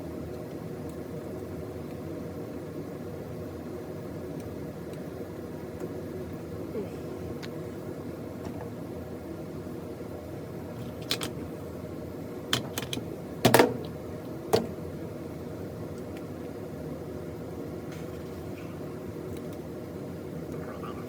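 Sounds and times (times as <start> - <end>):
low background hum: 0.0 - 21.0
clicks of handling control panel parts: 10.8 - 11.4, 12.5 - 14.0.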